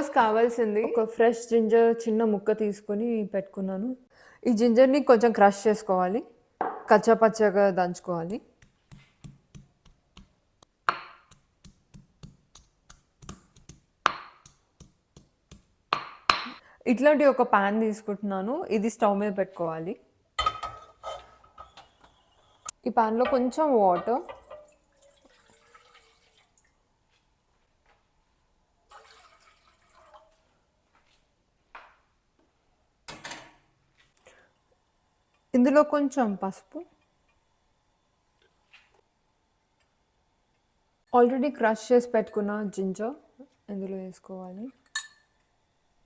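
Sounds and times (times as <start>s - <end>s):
water pouring into a pan: 24.4s - 26.8s, 28.9s - 30.4s.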